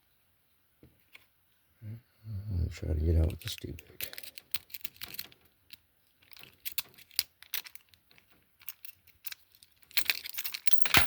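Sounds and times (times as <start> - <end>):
lock pick clicking in padlock: 4.0 - 9.4, 10.0 - 11.0.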